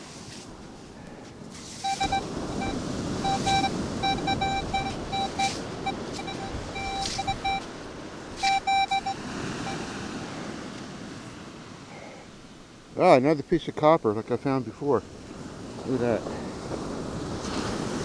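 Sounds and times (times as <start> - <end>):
metal detector beeping: 1.8 - 7.7, 8.4 - 9.8.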